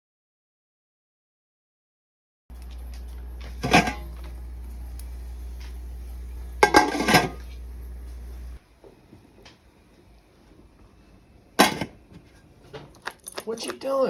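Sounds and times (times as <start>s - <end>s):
steady low hum: 2.5s - 12.7s
kitchenware clattering: 2.7s - 4.5s, 6.5s - 7.7s, 11.6s - 14.0s.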